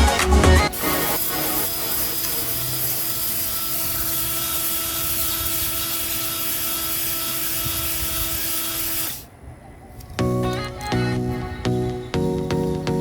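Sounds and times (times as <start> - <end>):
drill motor whine: 0.7 - 9.3.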